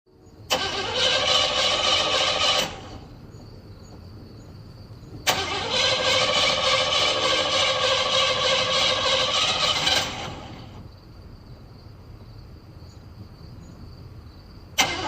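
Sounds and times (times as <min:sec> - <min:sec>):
car engine cranking: 0:00.5 - 0:03.1, 0:05.3 - 0:10.8, 0:14.8 - 0:15.0.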